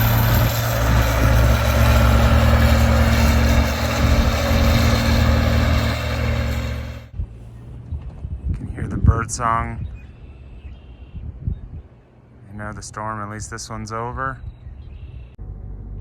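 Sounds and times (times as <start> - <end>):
engine humming: 0.0 - 7.8.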